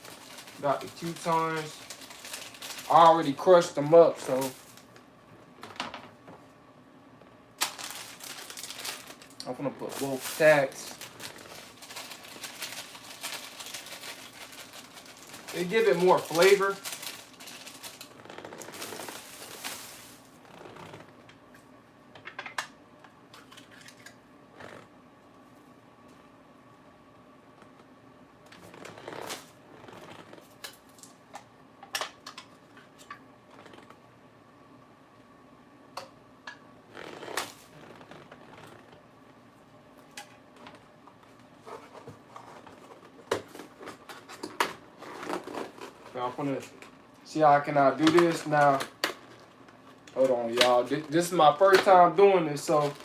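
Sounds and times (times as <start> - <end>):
food packaging crinkling: 0.0 - 5.0, 7.6 - 20.4, 52.6 - 53.0.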